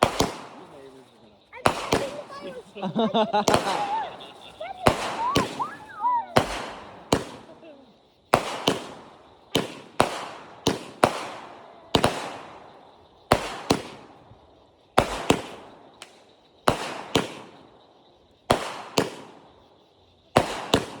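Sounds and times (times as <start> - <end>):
fireworks bangs echoing: 0.0 - 21.0.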